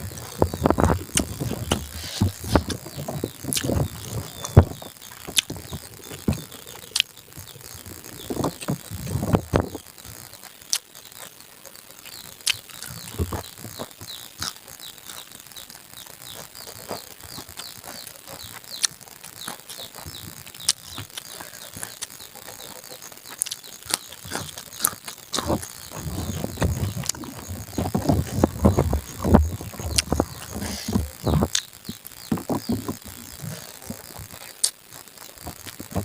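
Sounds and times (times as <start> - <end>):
person chewing: 0.0 - 11.3, 12.4 - 15.3, 16.4 - 36.0
high chirps: 0.0 - 36.0.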